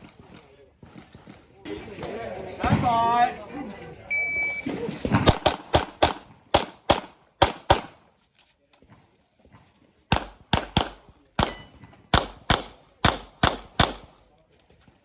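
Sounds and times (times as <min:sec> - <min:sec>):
handgun shots: 0:05.3 - 0:08.0, 0:10.1 - 0:14.1.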